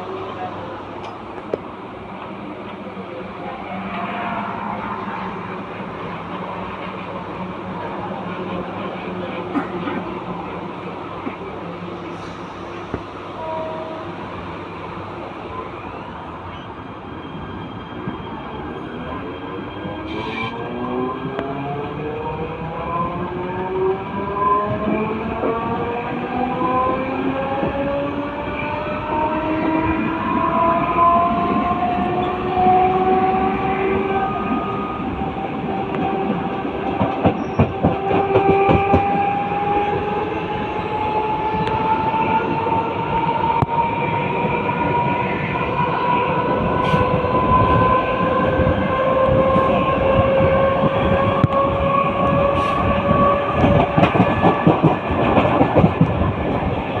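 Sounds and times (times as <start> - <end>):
train coach rumble: 18.0 - 57.0.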